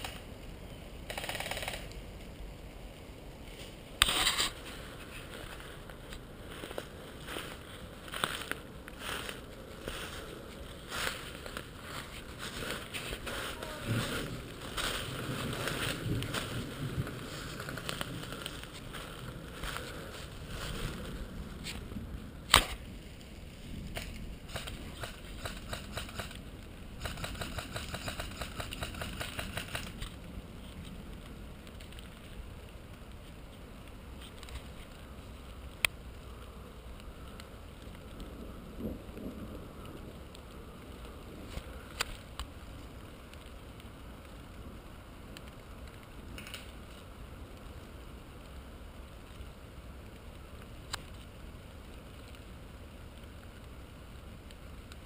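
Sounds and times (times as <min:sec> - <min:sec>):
sharp clicks: 0:01.1 - 0:02.0, 0:24.0 - 0:26.4, 0:27.0 - 0:30.2
airsoft gun shots: 0:22.5 - 0:22.8.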